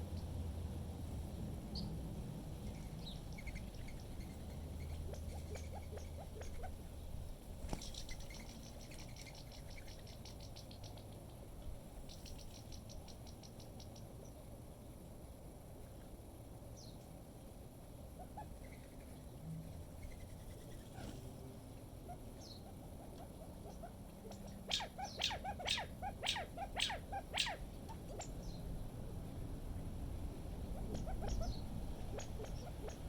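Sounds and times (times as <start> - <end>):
small birds chirping: 1.7 - 1.9, 2.6 - 6.8, 7.7 - 11.4, 22.4 - 28.7, 30.7 - 33.0
rapid high bird trills: 23.8 - 28.5
wind rumble on microphone: 27.6 - 33.0.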